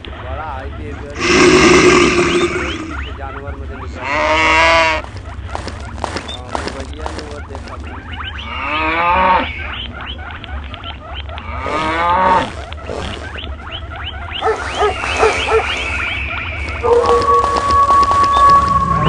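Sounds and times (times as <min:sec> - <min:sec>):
animal calls: 0:00.0 - 0:19.0
high gliding squeal: 0:14.6 - 0:19.0.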